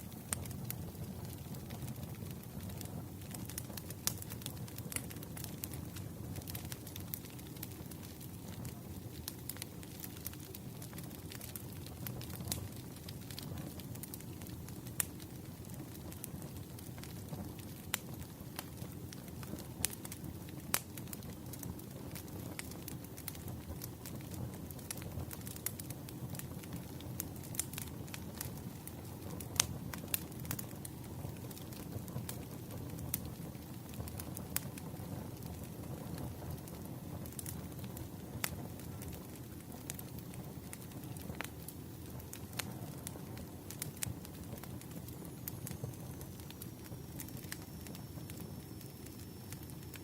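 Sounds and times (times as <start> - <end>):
fire low rumble: 0.0 - 50.0
firewood crackling and popping: 0.0 - 50.0.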